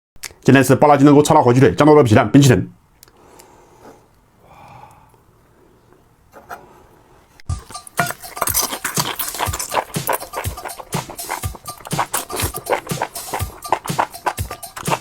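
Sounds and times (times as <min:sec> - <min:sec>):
chewing meat with mouth smacks: 0:07.5 - 0:15.0.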